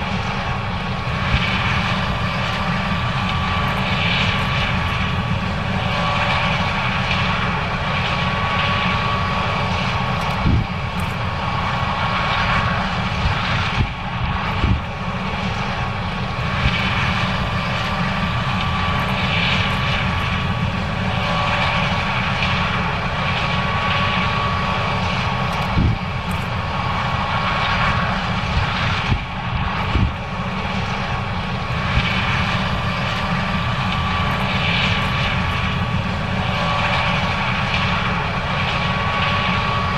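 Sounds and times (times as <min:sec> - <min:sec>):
combine harvester drone: 0:00.0 - 0:39.9.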